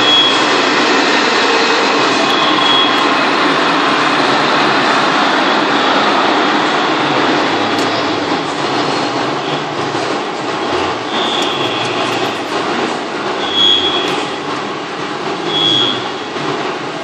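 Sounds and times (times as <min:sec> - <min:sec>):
lathe machining: 0:00.0 - 0:17.0
short high squeals: 0:13.4 - 0:14.4, 0:15.5 - 0:16.3.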